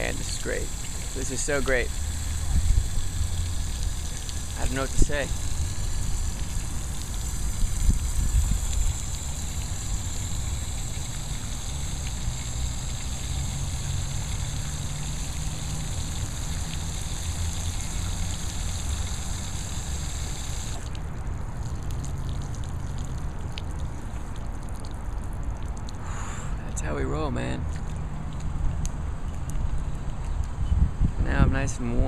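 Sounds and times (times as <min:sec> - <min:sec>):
outdoor shower water spraying: 0:00.0 - 0:21.0
low steady rumble: 0:00.0 - 0:26.0.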